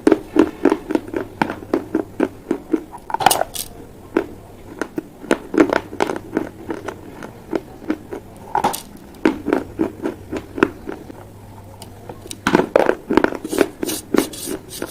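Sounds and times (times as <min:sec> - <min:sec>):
crunching clay pot pieces: 0:00.1 - 0:11.0.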